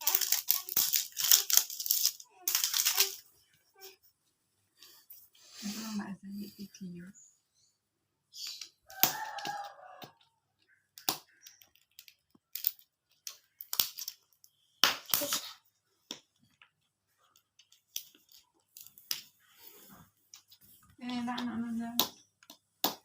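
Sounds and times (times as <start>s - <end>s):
gift wrapping tearing and crumpling: 0.0s - 3.2s.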